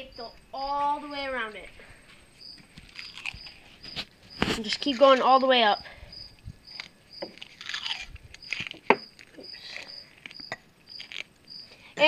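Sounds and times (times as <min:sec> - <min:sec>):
duct tape crackling off roll: 0:02.7 - 0:05.2, 0:06.7 - 0:09.4, 0:10.1 - 0:11.5.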